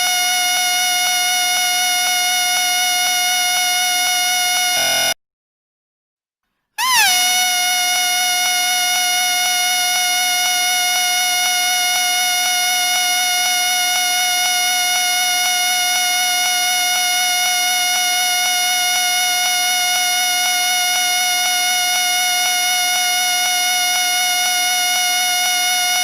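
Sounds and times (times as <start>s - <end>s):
shrill whistle blown: 4.7s - 5.2s, 6.8s - 10.2s.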